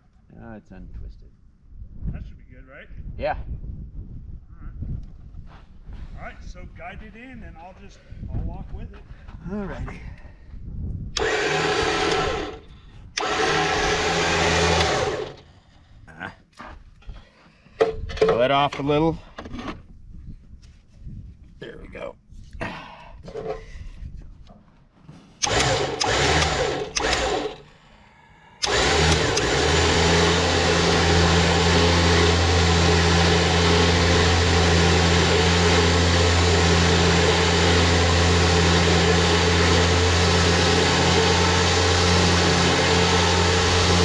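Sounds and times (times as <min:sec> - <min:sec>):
electric winch motor running: 0:11.2 - 0:15.5, 0:25.4 - 0:27.8, 0:28.6 - 0:44.0.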